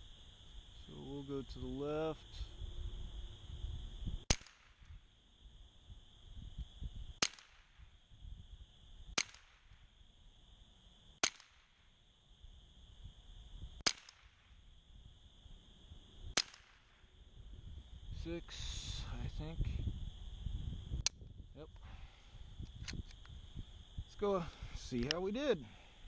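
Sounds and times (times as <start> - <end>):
rifle shots: 4.3 - 4.9, 13.8 - 14.4, 16.3 - 17.0.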